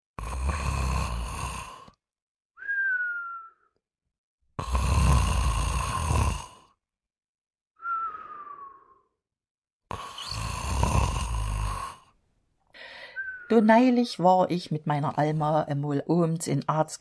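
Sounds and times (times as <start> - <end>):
person snoring: 0.2 - 2.0, 4.6 - 6.8, 9.9 - 12.2
falling whistle: 2.6 - 3.8, 7.8 - 9.1, 13.2 - 13.5.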